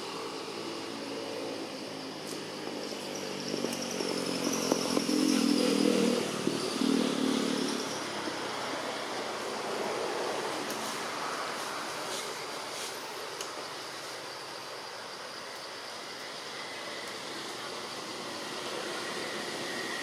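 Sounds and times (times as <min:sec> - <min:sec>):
motor vehicle passing by: 0:02.7 - 0:11.0.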